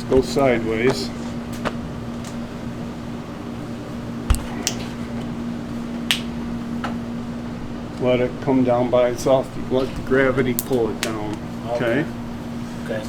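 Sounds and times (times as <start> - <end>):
steady low hum: 0.0 - 13.0
candy thud: 4.2 - 4.9
soft squishy candy slaps: 4.3 - 5.0.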